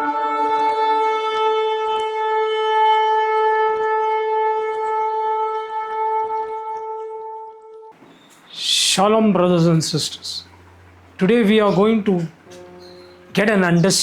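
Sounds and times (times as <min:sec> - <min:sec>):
shofar blast: 0:12.5 - 0:13.4.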